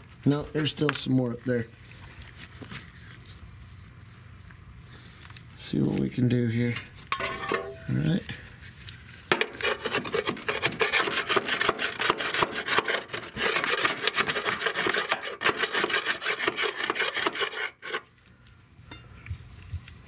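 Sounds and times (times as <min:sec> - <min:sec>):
metal scraper scraping: 0:06.8 - 0:08.2, 0:09.3 - 0:18.1.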